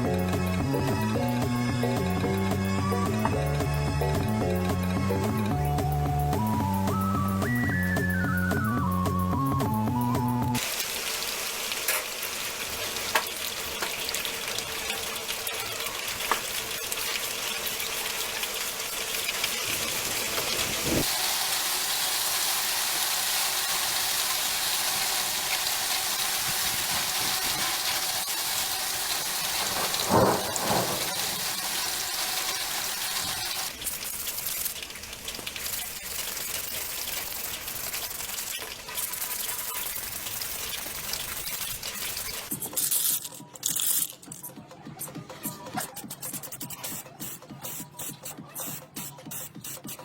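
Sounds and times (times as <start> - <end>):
background music: 0.0 - 10.6
hissing spray: 10.6 - 36.7.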